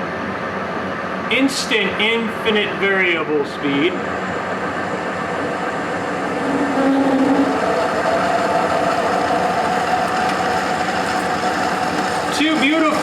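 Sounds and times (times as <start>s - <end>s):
lathe humming: 4.0s - 13.0s.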